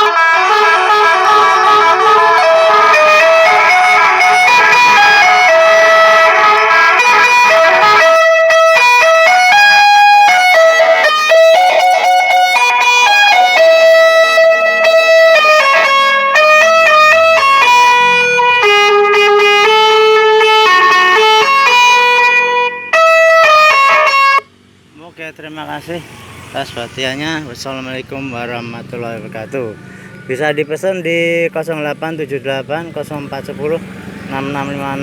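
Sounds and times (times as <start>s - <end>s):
electronic car horn melody: 0.0s - 24.5s.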